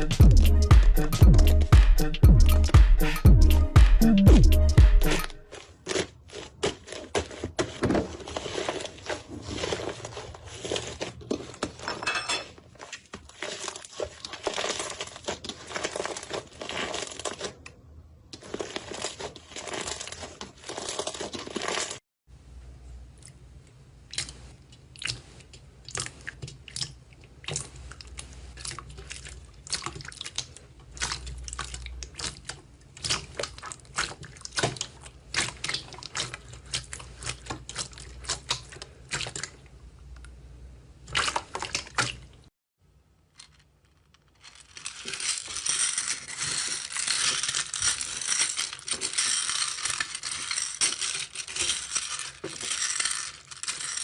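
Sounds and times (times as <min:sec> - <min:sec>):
crunchy slime crackling: 0:12.7 - 0:22.0.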